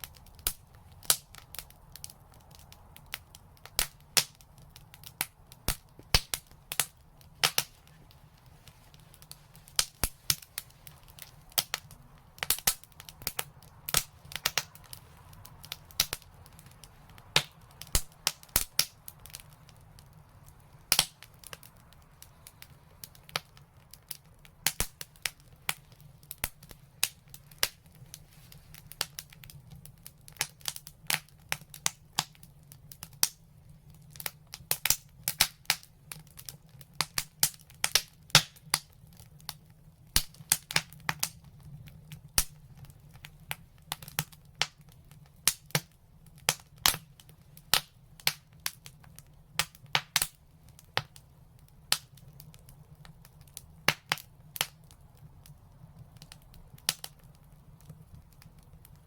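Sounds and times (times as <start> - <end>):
flames rushing: 0.0 - 32.0
wood fire crackling: 0.0 - 59.0.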